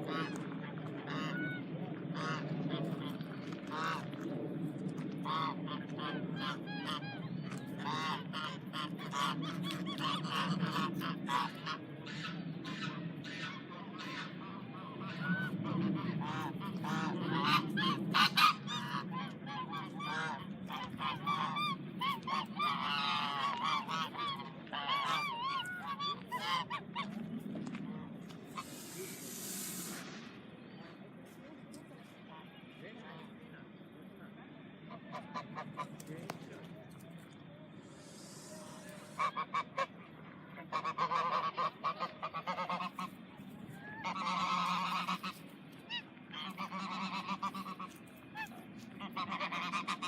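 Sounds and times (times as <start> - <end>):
geese honking: 0.0 - 4.2, 5.2 - 27.2, 28.0 - 30.4, 34.9 - 36.2, 37.8 - 50.0
low steady hum: 0.0 - 50.0.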